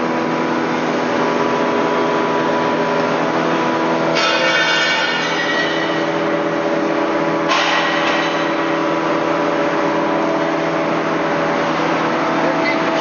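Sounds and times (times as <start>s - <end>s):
ringing metallic clangs: 4.1s - 6.1s.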